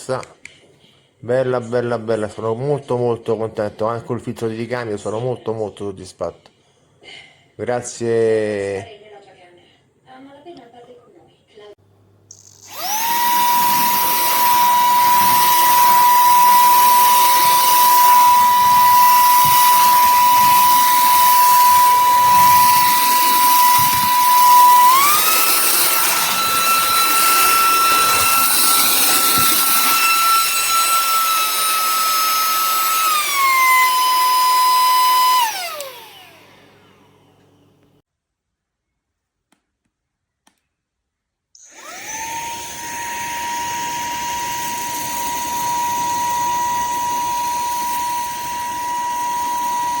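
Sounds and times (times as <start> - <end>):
handheld vacuum cleaner whine: 12.3 - 37.9, 41.6 - 50.0.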